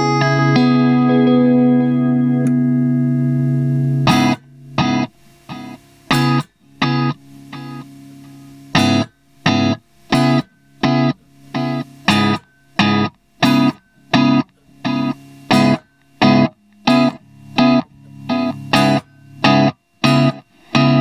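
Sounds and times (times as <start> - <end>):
electric guitar chord stabs: 0.0 - 21.0.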